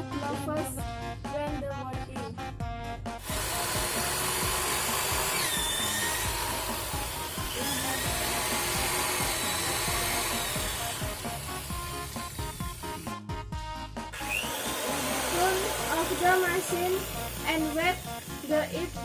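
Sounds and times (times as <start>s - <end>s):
background music: 0.0s - 19.0s
drill bit squealing: 3.2s - 13.1s, 14.1s - 19.0s
drill drilling: 3.2s - 13.1s, 14.1s - 19.0s.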